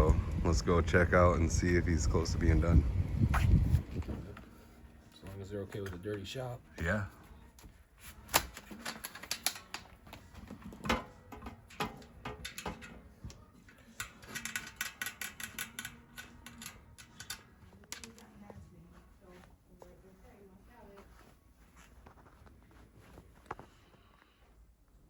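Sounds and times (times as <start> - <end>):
sharp clicks and knocks: 10.8 - 18.3.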